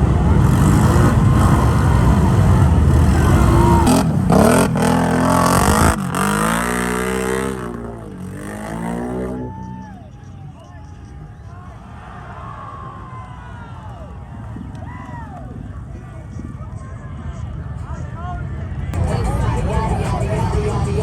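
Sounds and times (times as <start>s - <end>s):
atv engine revving: 0.0s - 9.9s.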